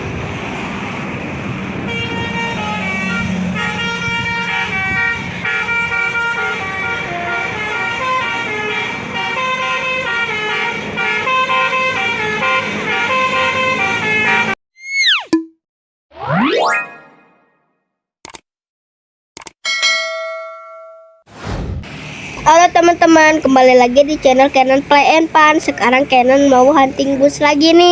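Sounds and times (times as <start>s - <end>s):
bus engine humming: 0.0s - 14.6s, 21.9s - 27.9s
multi-tone air horn melody: 1.9s - 14.6s.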